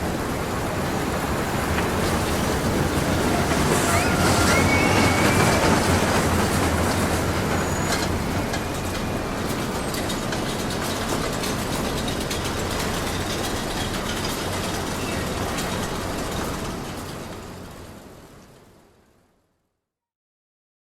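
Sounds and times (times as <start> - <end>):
ride rumbling on rail track: 0.0 - 19.3
rapid clicking and clacking: 1.4 - 17.4.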